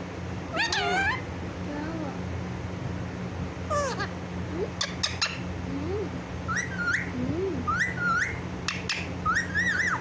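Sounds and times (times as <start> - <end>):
parrot calling: 0.5 - 1.3, 3.7 - 5.5, 6.5 - 10.0.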